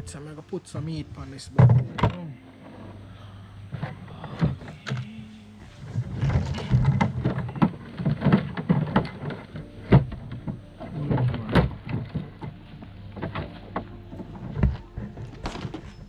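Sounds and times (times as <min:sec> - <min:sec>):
faint low hum: 0:00.0 - 0:16.0
objects knocking and clattering: 0:01.5 - 0:02.8, 0:05.9 - 0:16.0.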